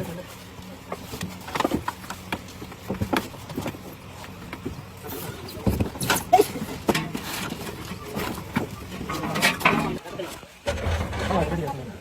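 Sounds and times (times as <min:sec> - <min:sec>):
steady background noise: 0:00.0 - 0:12.0.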